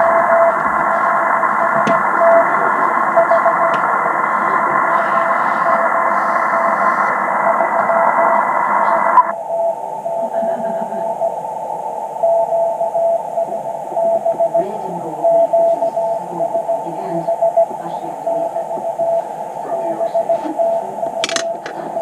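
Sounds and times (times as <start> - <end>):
morse code tone: 0.0 - 8.4
shortwave radio hiss: 0.0 - 22.0.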